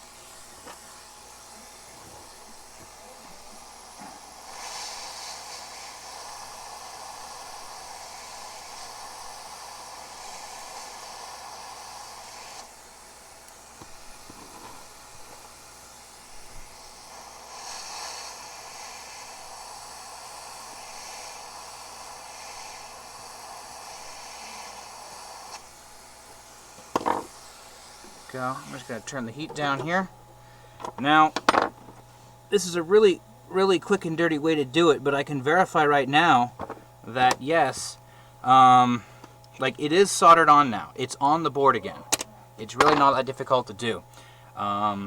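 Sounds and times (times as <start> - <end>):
hot air hissing from nozzle: 0.0 - 32.9.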